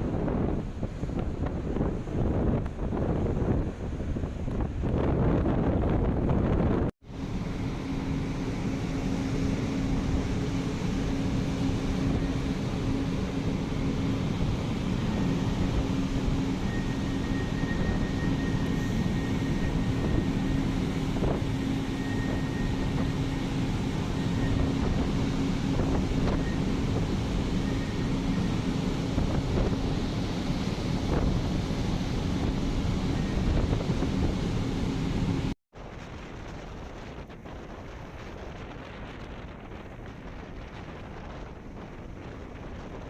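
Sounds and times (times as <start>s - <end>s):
storm wind buffeting microphone: 0.0s - 43.0s.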